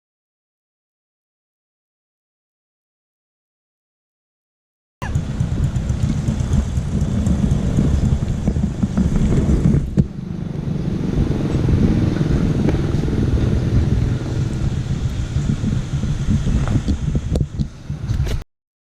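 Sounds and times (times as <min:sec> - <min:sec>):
motorcycle engine running: 0:05.0 - 0:18.4.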